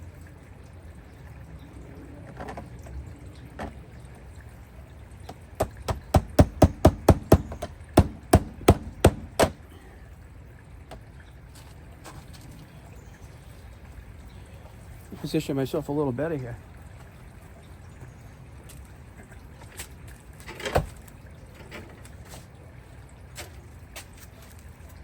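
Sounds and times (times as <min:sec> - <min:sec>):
hammer driving a nail: 0:05.6 - 0:09.6.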